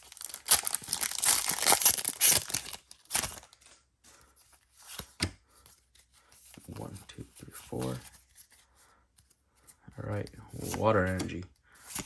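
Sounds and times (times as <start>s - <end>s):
foil wrapper tearing and crinkling: 0.0s - 3.8s.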